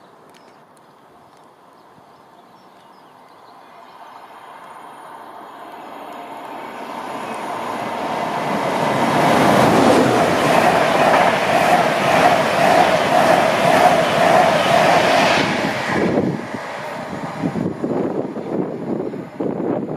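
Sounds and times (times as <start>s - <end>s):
train wheels rushing on rails: 4.2s - 19.9s.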